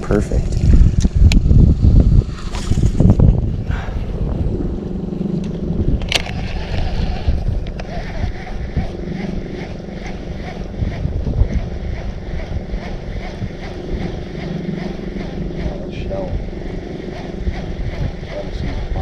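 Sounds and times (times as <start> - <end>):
wind buffeting microphone: 0.0 - 19.0
boat motor hum: 4.0 - 19.0.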